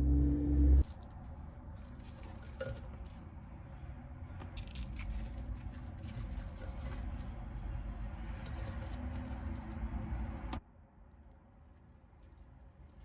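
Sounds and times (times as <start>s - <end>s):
low steady hum: 0.0s - 1.0s
faint handling clicks and scrapes: 0.8s - 7.6s, 8.3s - 9.9s.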